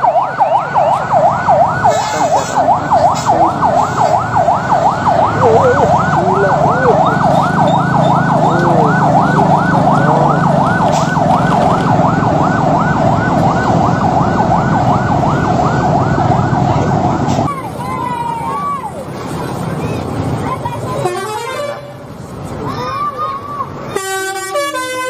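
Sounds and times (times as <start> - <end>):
siren yelping: 0.0 - 18.9.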